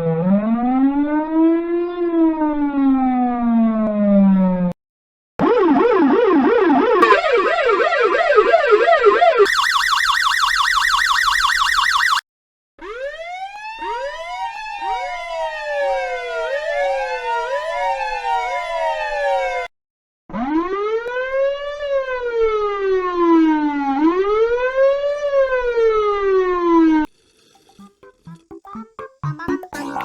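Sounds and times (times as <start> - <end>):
police siren wails: 5.4 - 12.2, 12.8 - 19.7
police siren yelp: 5.4 - 12.2, 12.8 - 19.7.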